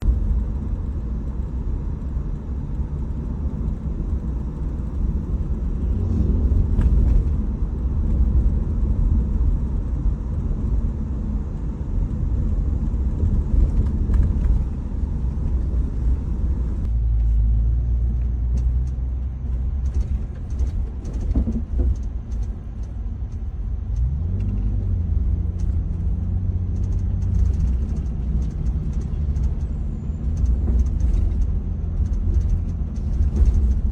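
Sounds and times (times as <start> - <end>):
road and drivetrain rumble: 0.0 - 33.9
rising engine tone: 5.3 - 8.5.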